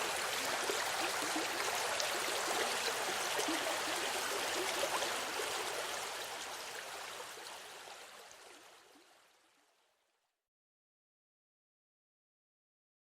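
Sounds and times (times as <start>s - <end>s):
stream babbling over stones: 0.0s - 8.9s.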